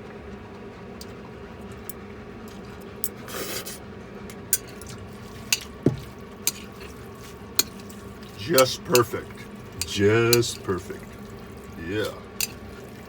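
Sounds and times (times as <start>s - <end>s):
steady low hum: 0.0s - 13.0s
chopsticks clicking on dish: 5.5s - 6.7s, 7.6s - 8.0s, 8.6s - 9.2s, 9.8s - 10.6s, 12.4s - 12.6s.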